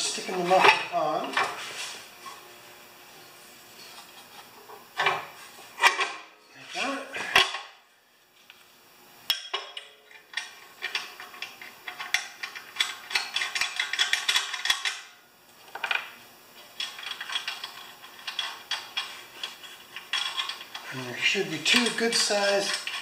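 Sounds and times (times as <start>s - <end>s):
metal tools clicking and rattling: 11.9s - 15.0s, 16.8s - 20.9s, 21.7s - 23.0s.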